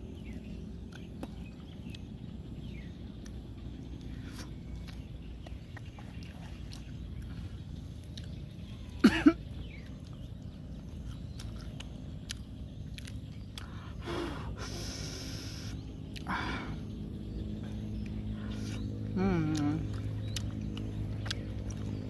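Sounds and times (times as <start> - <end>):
throaty sounds and breathing: 3.1 - 22.0
man coughing: 9.0 - 9.4.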